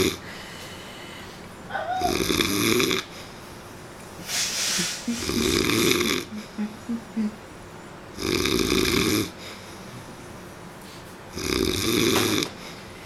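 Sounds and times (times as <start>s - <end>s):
man snoring: 0.0s - 0.2s, 2.1s - 3.1s, 5.0s - 7.4s, 8.2s - 9.4s, 11.3s - 12.6s
quiet breathing: 0.2s - 1.6s, 6.2s - 7.4s.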